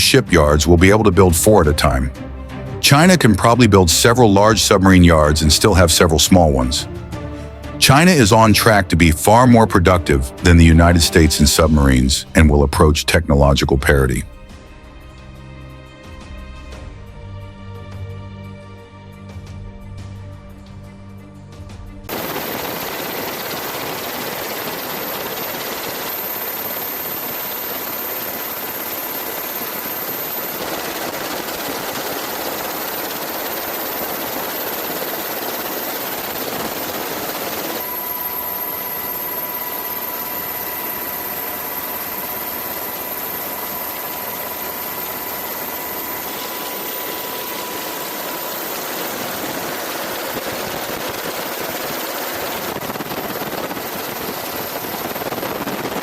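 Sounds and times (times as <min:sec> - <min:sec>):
mechanical engine noise with whine: 0:22.1 - 0:56.0.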